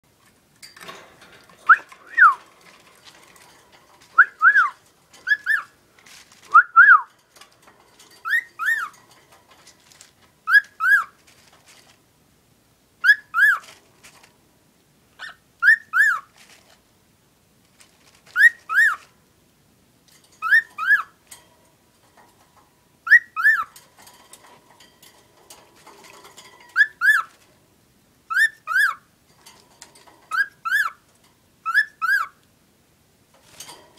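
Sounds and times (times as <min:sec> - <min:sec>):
cockatiel whistling: 0:04.2 - 0:05.7, 0:15.2 - 0:16.2, 0:28.3 - 0:29.0, 0:31.7 - 0:32.4.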